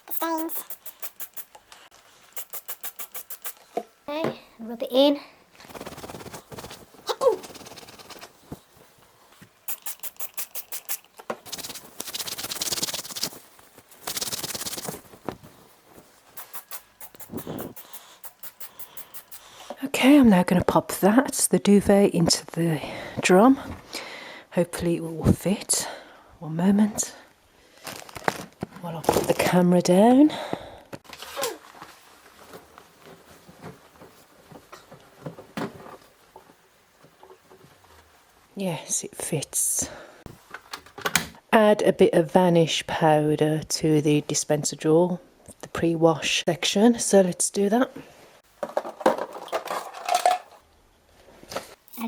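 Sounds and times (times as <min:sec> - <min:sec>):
fabric being rubbed by hand: 0:00.0 - 0:01.6, 0:02.3 - 0:03.6, 0:05.6 - 0:08.4, 0:11.5 - 0:19.5
duvet rustling: 0:11.5 - 0:16.4, 0:31.1 - 0:34.7.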